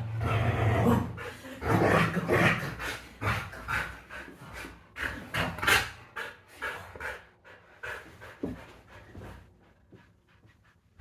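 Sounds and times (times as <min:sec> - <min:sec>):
dog panting: 0:02.8 - 0:11.0.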